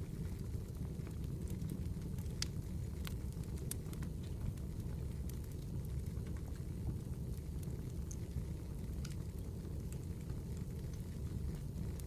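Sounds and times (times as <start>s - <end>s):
fire crackling and popping: 0.0s - 12.0s
wood fire rumbling: 0.0s - 12.0s.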